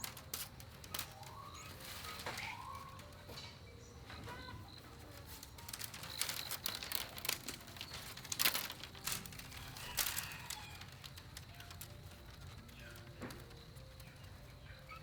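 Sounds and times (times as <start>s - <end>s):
bamboo strips rustling and cracking: 0.0s - 15.0s
birds chirping faintly: 0.0s - 15.0s.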